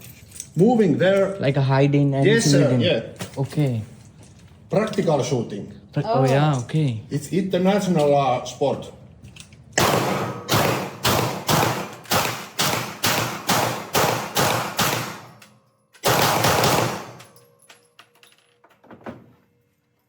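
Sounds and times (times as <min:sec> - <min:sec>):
handgun shots: 0:09.8 - 0:15.4, 0:16.0 - 0:17.3.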